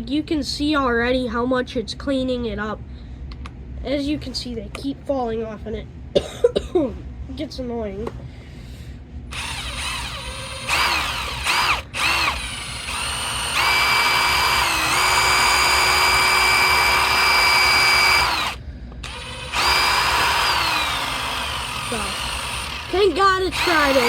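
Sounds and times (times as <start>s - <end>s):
power drill motor whining: 9.3s - 24.0s.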